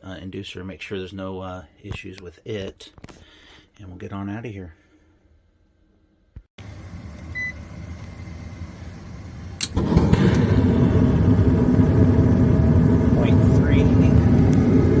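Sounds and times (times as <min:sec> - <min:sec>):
furnace inducer motor humming: 0:06.6 - 0:15.0
short electronic beep: 0:07.3 - 0:07.6.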